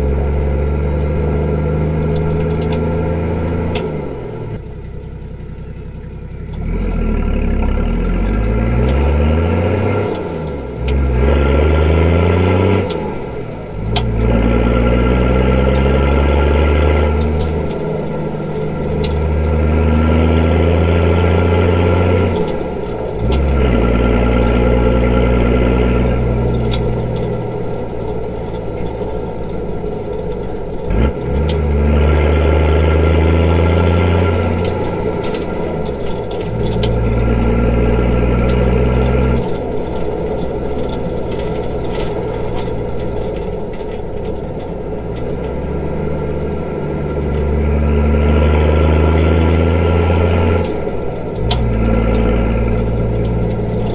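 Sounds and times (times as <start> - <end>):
diesel engine accelerating: 0.0 - 53.9.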